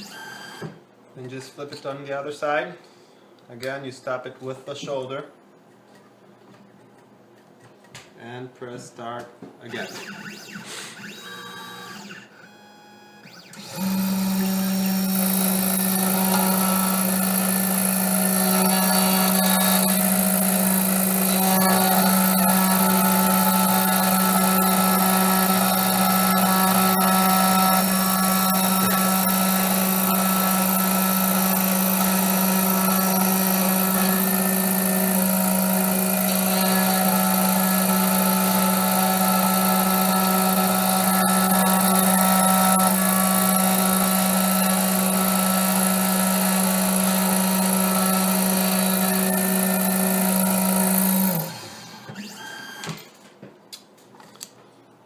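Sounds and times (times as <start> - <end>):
key-cutting machine running: 11.0 - 52.8.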